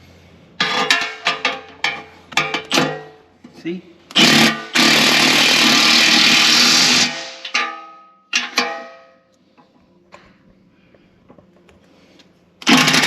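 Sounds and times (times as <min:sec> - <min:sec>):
sheet metal strikes ringing: 0:07.4 - 0:09.2.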